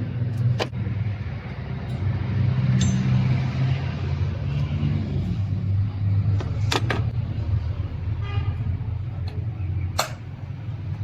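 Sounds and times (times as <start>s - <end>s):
vehicle engine running: 0.0s - 11.0s.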